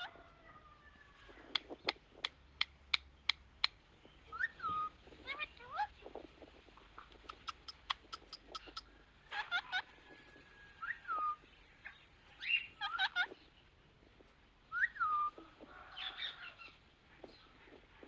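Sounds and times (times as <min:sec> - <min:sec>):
bird chirps: 0:01.2 - 0:09.8, 0:10.8 - 0:13.7, 0:14.7 - 0:17.8
bird sharp clicks: 0:01.5 - 0:03.8, 0:06.8 - 0:08.9.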